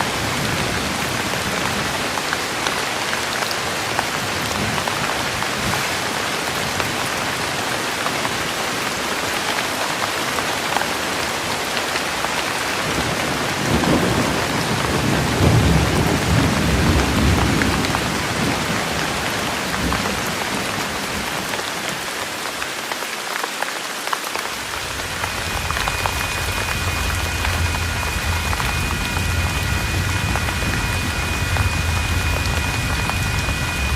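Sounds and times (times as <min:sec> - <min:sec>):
rain falling: 0:00.0 - 0:33.9
thunder rumbling: 0:12.8 - 0:21.5, 0:24.5 - 0:33.9.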